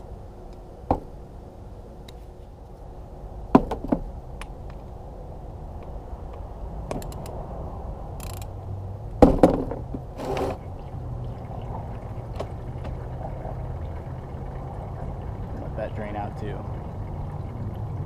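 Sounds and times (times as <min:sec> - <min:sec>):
sharp metallic knocks: 0:09.2 - 0:10.0
oil draining into a pan: 0:10.6 - 0:18.0.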